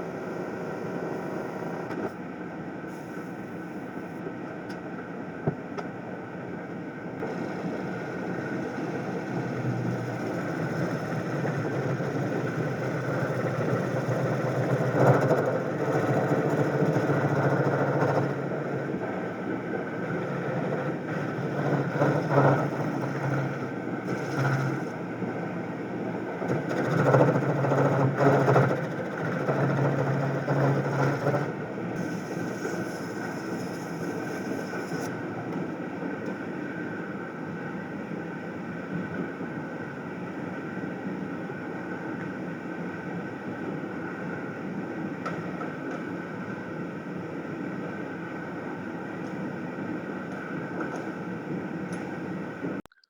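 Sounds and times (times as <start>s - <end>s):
motor humming: 7.2s - 35.4s.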